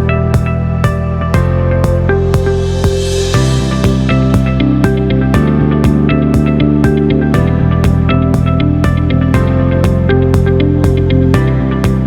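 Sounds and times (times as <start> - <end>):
held bass notes: 0.0 - 12.0
plucked guitar notes: 0.0 - 12.0.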